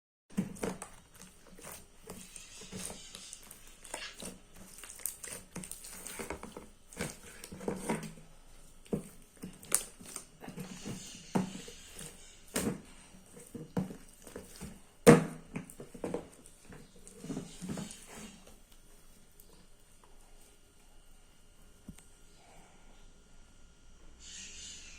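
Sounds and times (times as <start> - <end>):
slime squelching: 0.3 - 18.5.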